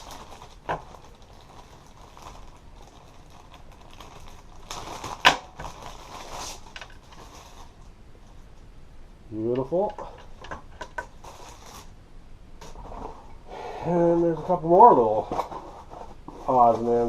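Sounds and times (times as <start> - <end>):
plastic packaging rustling: 0.0 - 8.5, 9.7 - 12.0, 14.3 - 17.0.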